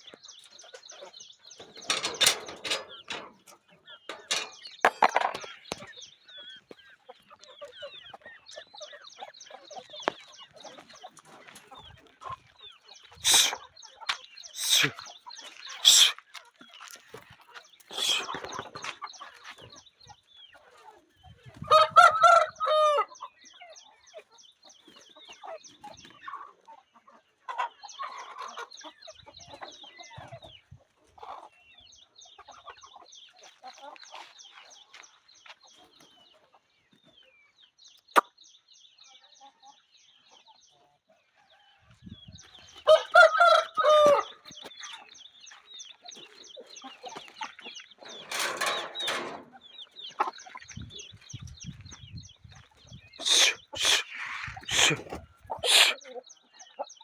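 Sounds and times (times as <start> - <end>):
chicken clucking: 0.0 - 38.4, 39.1 - 57.0
rooster crowing: 21.7 - 23.1, 42.9 - 44.4.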